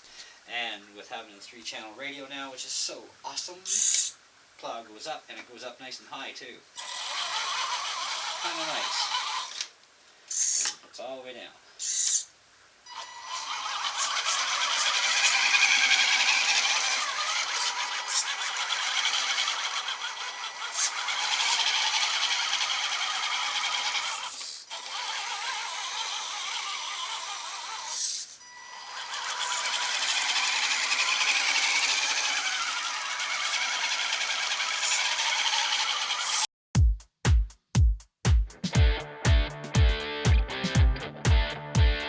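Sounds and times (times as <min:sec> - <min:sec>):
toy truck motor and gears rattling: 0:03.7 - 0:04.1, 0:06.8 - 0:10.8, 0:11.8 - 0:12.3, 0:12.9 - 0:36.5.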